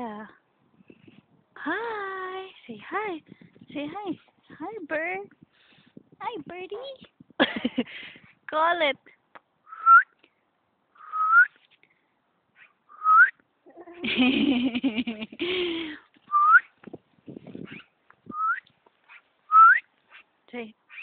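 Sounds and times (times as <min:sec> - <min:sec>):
upward sweeping whistled call: 0:09.7 - 0:10.1, 0:11.0 - 0:11.6, 0:19.5 - 0:19.9.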